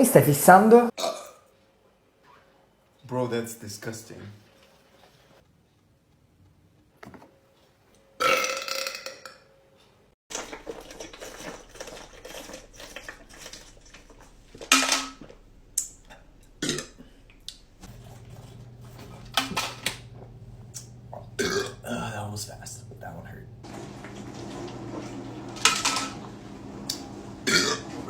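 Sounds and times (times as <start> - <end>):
men burping: 1.0 - 1.4, 16.1 - 17.3, 21.3 - 22.4, 27.5 - 27.8.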